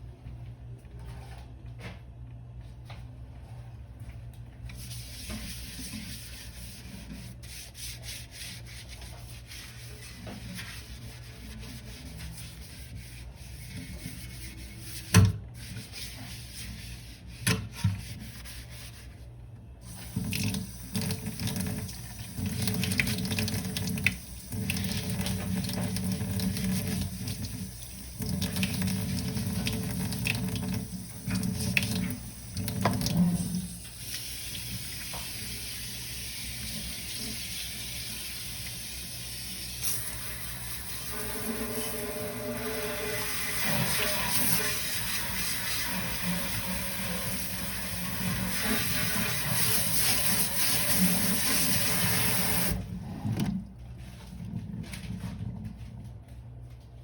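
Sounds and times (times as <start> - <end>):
sponge scrubbing dishes: 4.7 - 19.2
tap water running into sink: 19.9 - 52.8.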